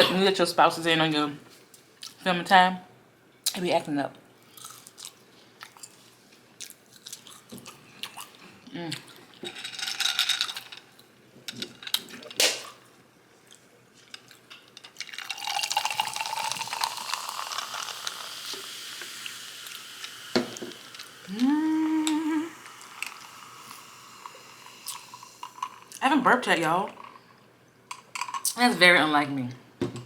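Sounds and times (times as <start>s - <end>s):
slurping sip of liquid: 20.8s - 26.0s
person humming mm: 21.2s - 22.9s.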